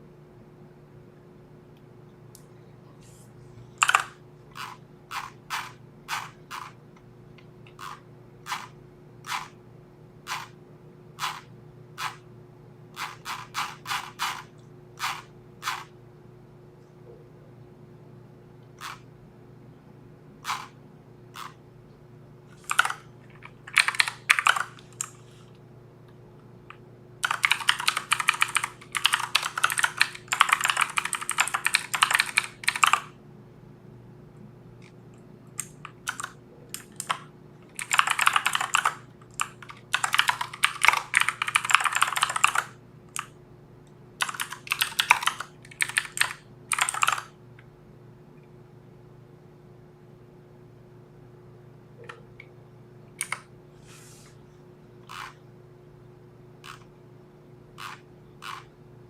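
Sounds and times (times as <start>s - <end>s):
faint steady hum: 0.0s - 59.0s
keyboard typing: 3.7s - 6.8s, 7.6s - 9.6s, 10.3s - 10.6s, 11.2s - 12.2s, 13.0s - 15.9s, 18.8s - 19.0s, 20.4s - 20.8s, 21.4s - 21.6s, 22.6s - 25.3s, 27.2s - 33.1s, 35.6s - 43.3s, 44.2s - 47.3s, 53.2s - 53.5s, 55.1s - 55.4s, 56.6s - 56.9s, 57.8s - 58.7s.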